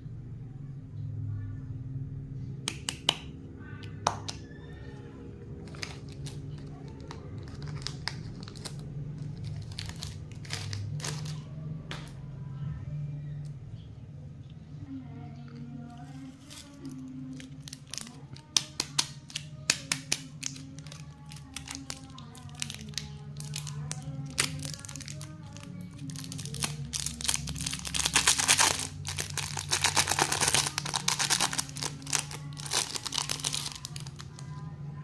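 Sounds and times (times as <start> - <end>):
plastic wrappers crinkling: 5.6 - 11.5, 16.2 - 34.6.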